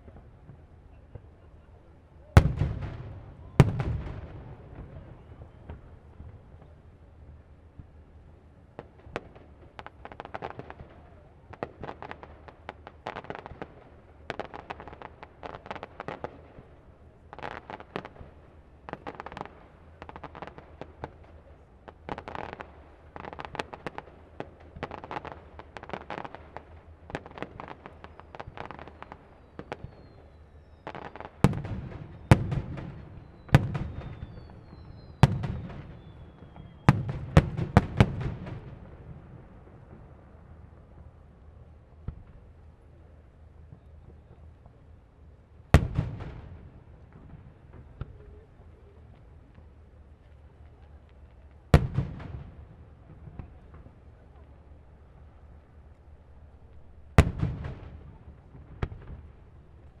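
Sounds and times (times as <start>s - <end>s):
fireworks crackling pops: 0.0s - 8.1s, 8.7s - 60.0s
firework bangs with low rumble: 0.0s - 60.0s
falling whistles: 33.1s - 36.9s.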